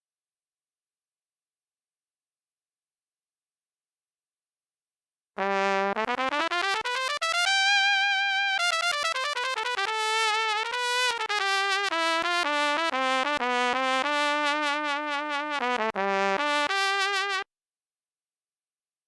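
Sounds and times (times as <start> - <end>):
brass instrument solo melody: 5.4 - 17.5.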